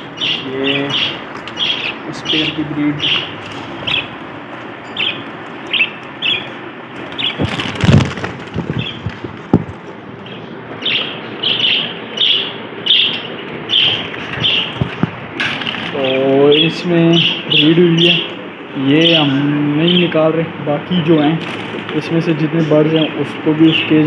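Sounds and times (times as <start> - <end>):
budgerigars chirping: 0.0 - 4.2, 4.9 - 9.2, 10.2 - 20.4
loud clatter: 6.9 - 10.0, 13.9 - 16.0
sharp knocks: 7.4 - 9.9.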